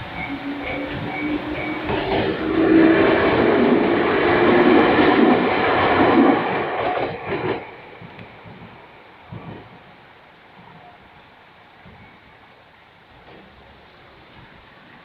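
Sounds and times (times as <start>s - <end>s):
wheels knocking over rail joints: 0.0s - 10.0s
train wheel-and-rail noise: 0.0s - 15.0s.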